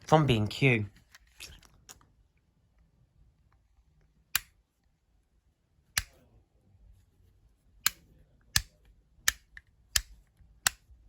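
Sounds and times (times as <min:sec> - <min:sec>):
rocker switch clicking: 0:07.8 - 0:10.9.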